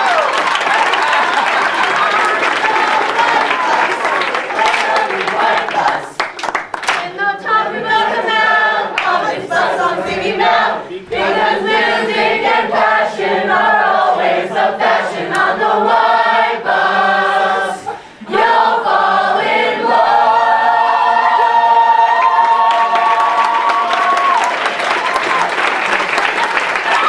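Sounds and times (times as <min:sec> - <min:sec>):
group of people singing: 0:01.6 - 0:22.8.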